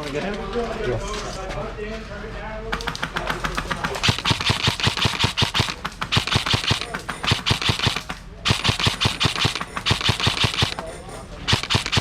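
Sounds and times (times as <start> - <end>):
airsoft rifle firing rapidly: 2.8 - 12.0.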